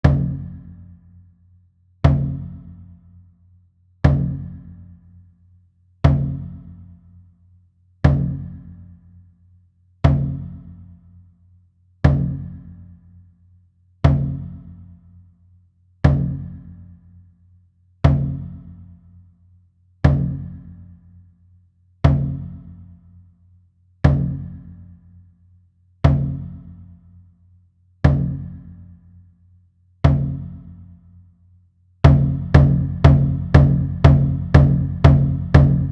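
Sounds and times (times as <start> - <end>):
large drum beating: 30.1 - 30.5, 32.1 - 35.9.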